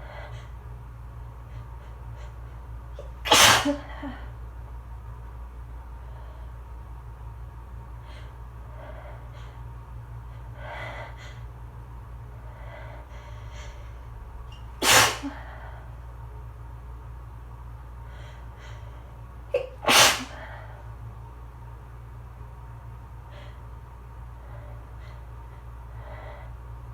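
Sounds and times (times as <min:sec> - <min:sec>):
faint breathing: 0:00.0 - 0:00.7, 0:06.0 - 0:06.8, 0:08.0 - 0:11.7, 0:12.3 - 0:14.4, 0:15.2 - 0:16.0, 0:18.0 - 0:19.2, 0:24.3 - 0:26.7
loud sneezes: 0:03.0 - 0:04.0, 0:14.8 - 0:15.5, 0:19.6 - 0:20.4
sharp intake of breath: 0:14.8 - 0:15.9, 0:19.9 - 0:20.8.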